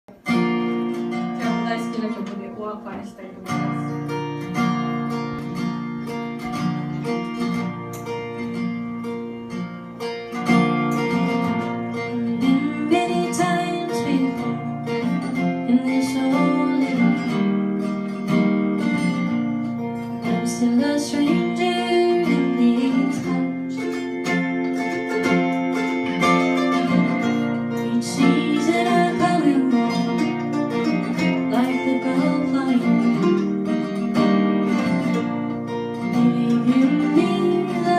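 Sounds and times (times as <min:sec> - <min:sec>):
strummed acoustic guitar: 0:00.1 - 0:37.9
person singing sliding melody: 0:27.8 - 0:30.2.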